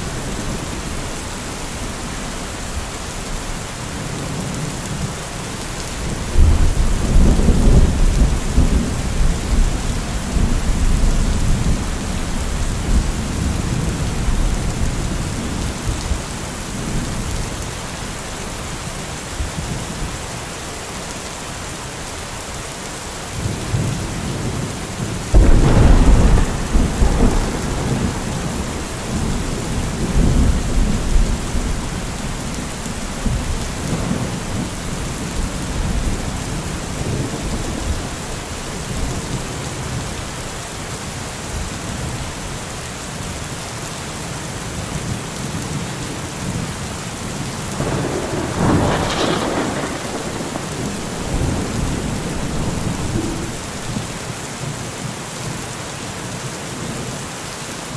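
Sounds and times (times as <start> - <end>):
steady rain: 0.0 - 57.9
thunder clap and rumble: 6.0 - 17.6, 23.4 - 40.1, 47.7 - 54.3.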